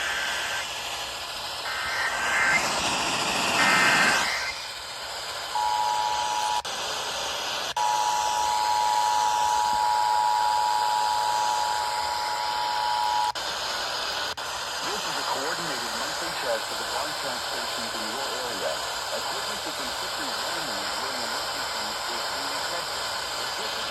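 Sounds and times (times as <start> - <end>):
background hiss: 0.0 - 23.9
warbling digital data bursts: 1.5 - 4.8.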